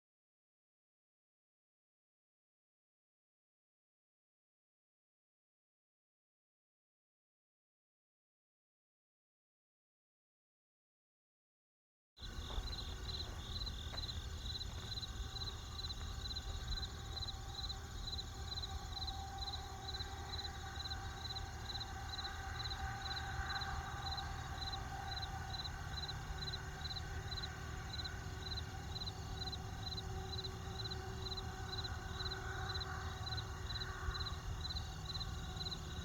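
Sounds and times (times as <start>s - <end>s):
campfire low rumble: 12.2s - 36.0s
crickets chirping: 12.2s - 36.0s
insect trilling: 12.2s - 36.0s.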